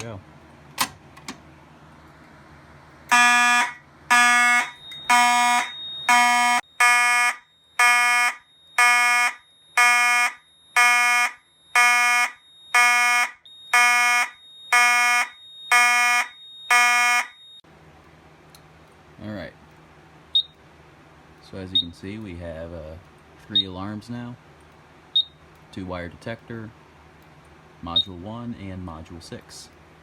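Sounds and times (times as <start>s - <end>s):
pulsing electronic fire alarm horn: 3.1s - 17.6s.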